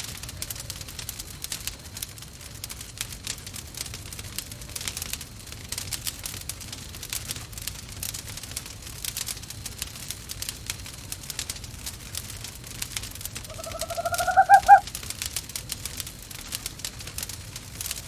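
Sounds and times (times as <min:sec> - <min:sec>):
wood fire crackling: 0:00.0 - 0:18.0
owl call: 0:13.5 - 0:14.8.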